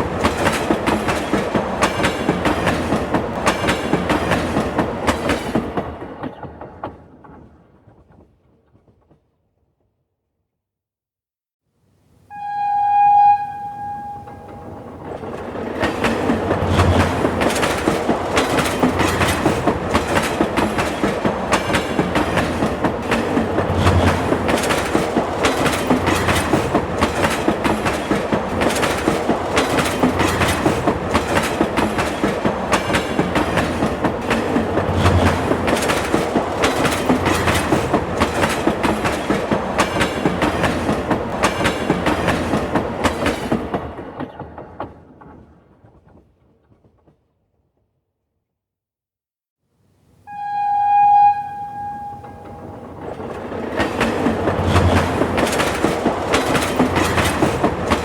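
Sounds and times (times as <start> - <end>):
train rumbling on track: 0.0 - 9.1, 12.3 - 47.2, 50.3 - 58.0
wheels clacking over rail joints: 0.0 - 9.2, 14.3 - 47.2, 51.9 - 58.0
subway train horn: 12.3 - 15.1, 50.3 - 53.1.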